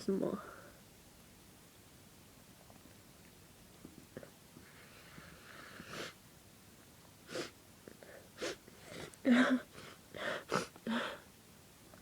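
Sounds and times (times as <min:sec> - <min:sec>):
person breathing: 0:08.0 - 0:11.3.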